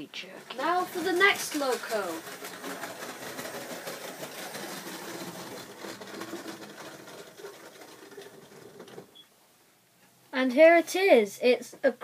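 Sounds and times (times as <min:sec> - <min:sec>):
model train running on track: 0:00.4 - 0:09.0.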